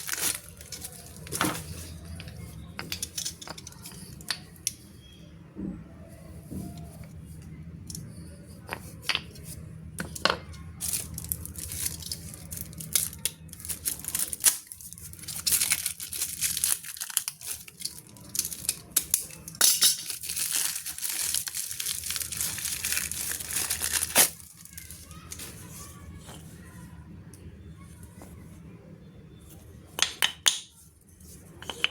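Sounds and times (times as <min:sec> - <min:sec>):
packaging tearing and crinkling: 0:00.0 - 0:01.8, 0:10.8 - 0:25.5
packaging clicks and rustles: 0:00.0 - 0:04.5, 0:10.0 - 0:26.7.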